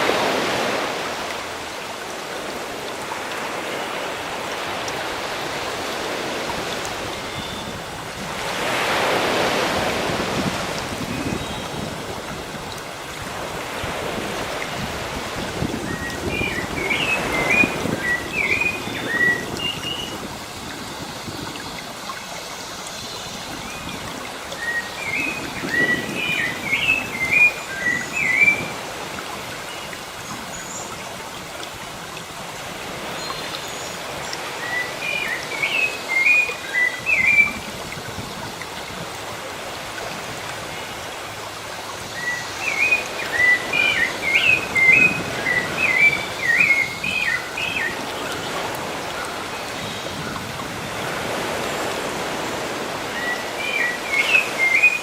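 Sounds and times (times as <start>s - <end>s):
sea waves: 0.0s - 55.0s
songbird singing: 11.1s - 12.0s, 15.5s - 28.8s, 33.2s - 37.7s, 41.8s - 51.2s, 53.1s - 55.0s.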